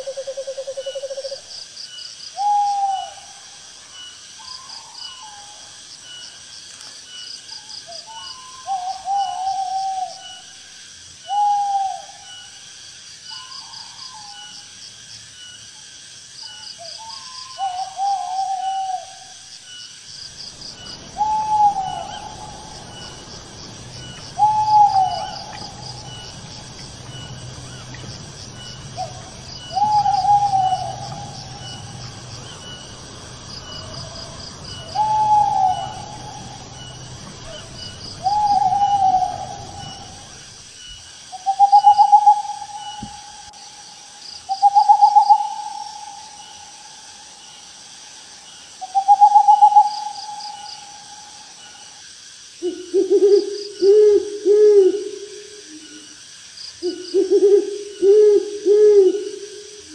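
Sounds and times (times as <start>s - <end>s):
owl hooting: 0.0s - 1.5s, 2.4s - 3.4s, 8.1s - 10.4s, 11.3s - 12.5s, 16.9s - 19.3s, 20.5s - 40.6s, 41.3s - 43.5s, 44.5s - 46.9s, 48.8s - 51.7s, 52.6s - 56.1s, 56.8s - 59.9s
insects chirping: 0.0s - 59.9s.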